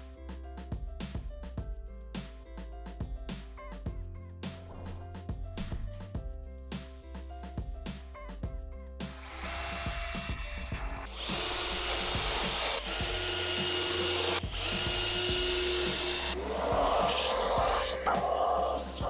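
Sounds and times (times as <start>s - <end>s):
background music: 0.0s - 19.0s
power tool whining: 9.2s - 19.0s.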